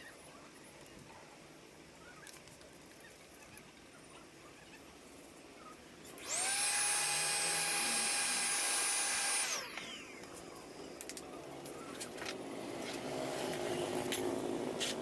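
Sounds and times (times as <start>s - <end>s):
power drill whining: 6.2s - 10.3s.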